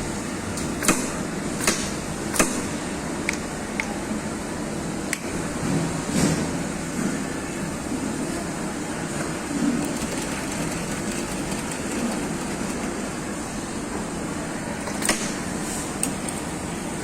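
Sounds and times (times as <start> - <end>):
sewing machine whirring: 9.2 - 13.9.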